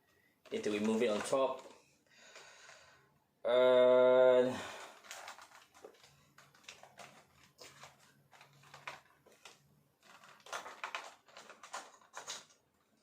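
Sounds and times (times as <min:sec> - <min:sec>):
plastic parts clicking: 0:04.8 - 0:12.8.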